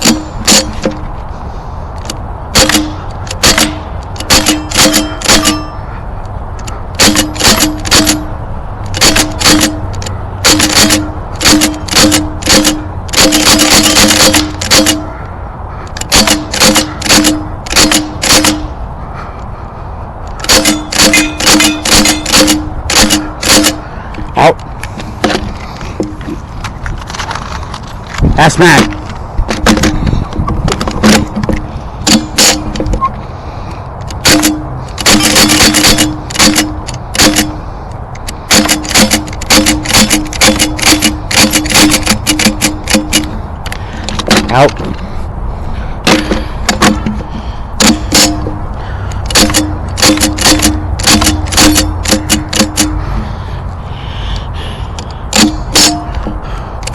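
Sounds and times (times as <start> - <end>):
air gun shots: 0.0 - 1.0, 2.5 - 5.8, 6.6 - 8.3, 8.9 - 15.1, 16.0 - 18.8, 20.4 - 23.8, 28.4 - 30.1, 30.7 - 33.1, 34.2 - 37.6, 38.2 - 43.4, 46.0 - 47.2, 47.8 - 53.3, 55.3 - 56.9.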